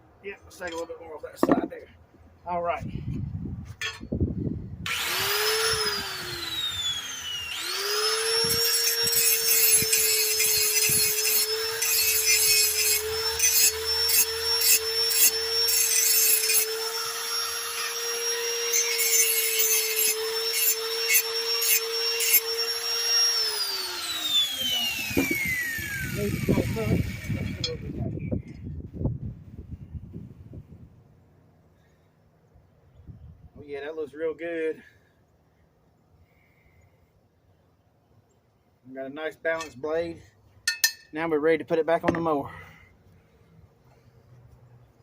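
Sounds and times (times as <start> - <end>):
power grinder grinding metal: 4.9 - 27.9.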